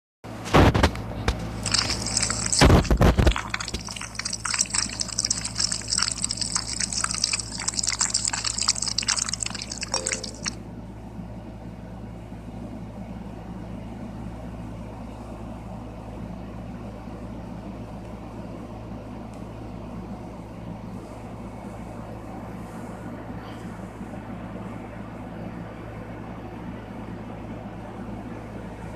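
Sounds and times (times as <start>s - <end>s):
steady low hum: 0.3s - 28.9s
slime squishing with wet clicks: 1.6s - 10.6s.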